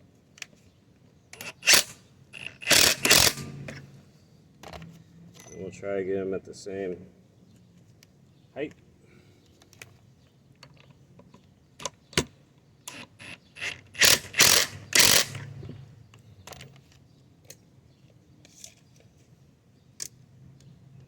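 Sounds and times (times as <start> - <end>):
wrench ratcheting: 1.4 - 3.8, 12.9 - 15.6.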